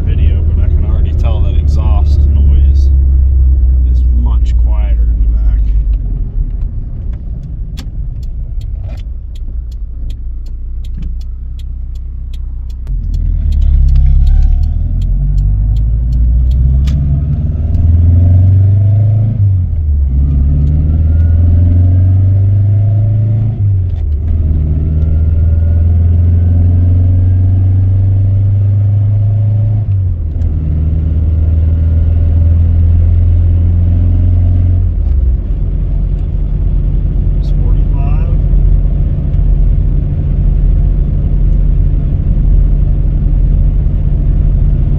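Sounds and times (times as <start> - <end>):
car engine accelerating: 0.0 - 44.9
regular clicking: 5.9 - 17.9.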